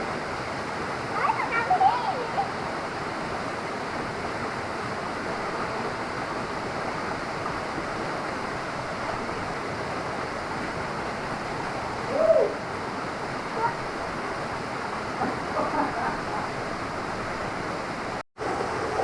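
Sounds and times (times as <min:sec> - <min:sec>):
waterfall rushing: 0:00.0 - 0:19.0
person calling out: 0:12.1 - 0:12.6.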